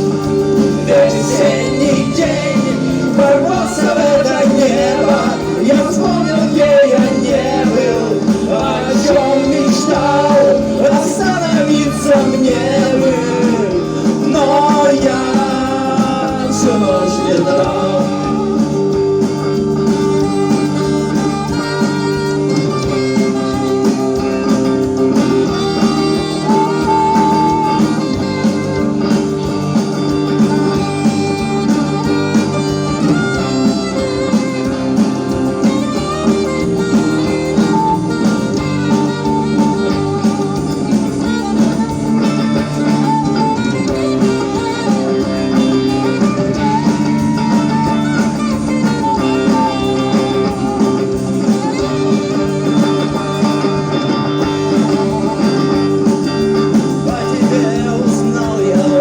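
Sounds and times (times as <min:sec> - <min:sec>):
backing track: 0:00.0 - 0:59.0
saxophone playing pop ballad: 0:00.0 - 0:59.0.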